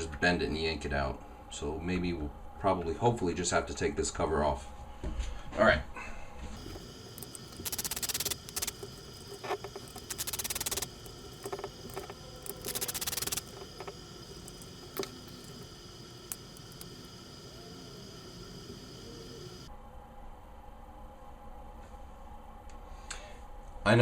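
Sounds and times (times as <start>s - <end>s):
rapid plastic clicking: 6.6s - 17.1s
small parts tapping: 6.6s - 19.7s.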